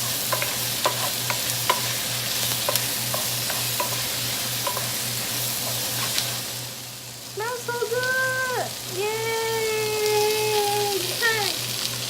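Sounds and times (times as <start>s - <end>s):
spatula scraping a pan: 0.0s - 6.5s
vegetables sizzling in a pan: 0.0s - 12.0s.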